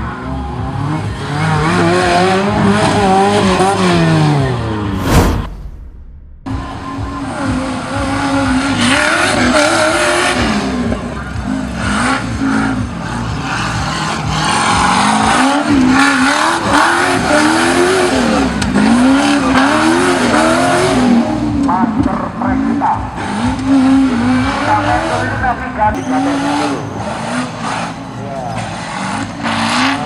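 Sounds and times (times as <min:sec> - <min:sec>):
engine revving hard: 0:00.8 - 0:21.6.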